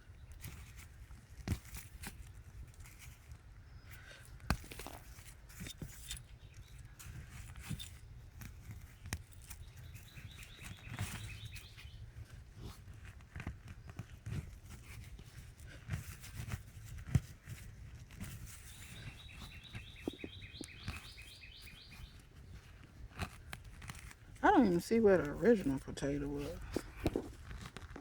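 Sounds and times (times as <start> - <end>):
digging in garden soil: 0.0 - 28.0
bird chirping: 9.6 - 12.0, 18.5 - 22.8.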